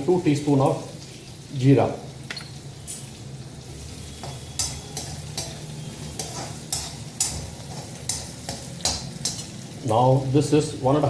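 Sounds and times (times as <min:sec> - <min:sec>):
spices sizzling in oil: 0:00.0 - 0:11.0
spatula scraping a pan: 0:02.9 - 0:09.6.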